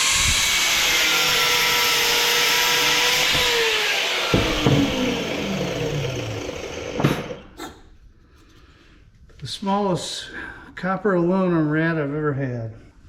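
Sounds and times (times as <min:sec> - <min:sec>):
power tool cutting metal: 0:00.0 - 0:07.6.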